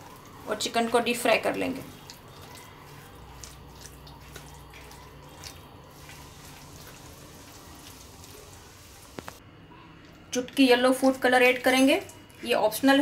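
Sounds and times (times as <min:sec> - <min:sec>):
wet sticky mixing sounds: 0:00.0 - 0:09.4.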